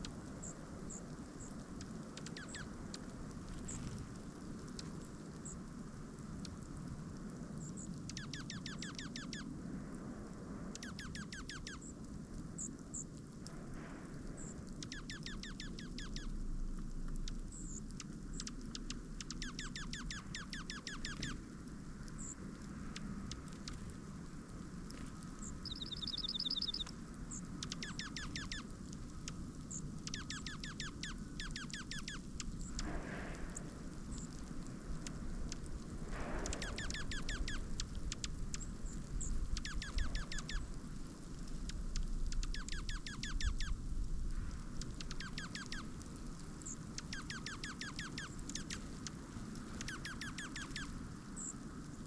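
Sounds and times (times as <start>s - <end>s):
small birds nasal calls: 0.0s - 4.1s, 13.8s - 16.4s, 17.1s - 24.0s, 25.1s - 52.0s
low background rumble: 0.0s - 52.0s
bird high chips: 25.6s - 26.9s
bird high trill: 25.6s - 26.9s, 36.6s - 37.9s.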